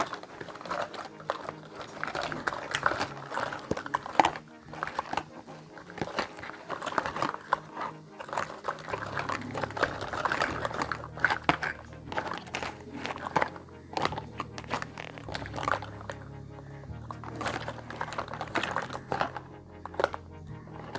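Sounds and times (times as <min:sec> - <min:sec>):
toy pieces clicking and tapping: 0:00.0 - 0:16.3
steady low hum: 0:08.8 - 0:20.9.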